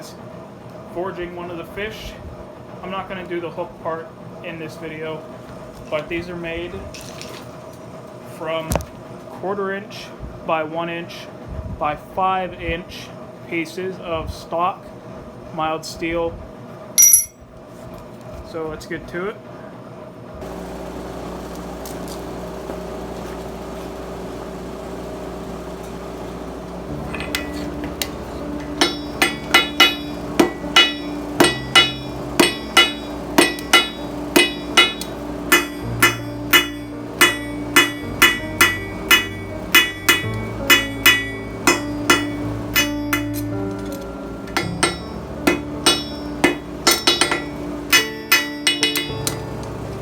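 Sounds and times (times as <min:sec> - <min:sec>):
hammer ringing on steel bar: 0:17.0 - 0:17.4, 0:27.0 - 0:49.6
steady hum: 0:20.4 - 0:50.0.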